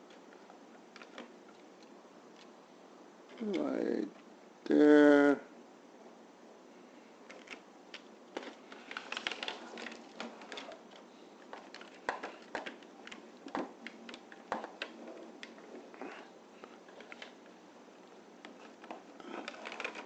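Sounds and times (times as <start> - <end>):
foil tape clicks and crackles: 7.3 - 15.6, 16.9 - 17.5, 18.4 - 20.0.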